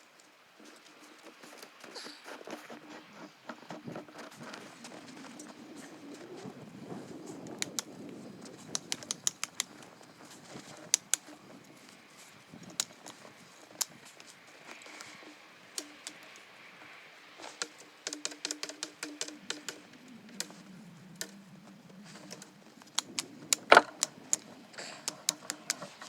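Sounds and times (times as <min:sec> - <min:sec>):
low steady hiss: 0:00.0 - 0:26.0
wood fire crackling: 0:07.5 - 0:26.0.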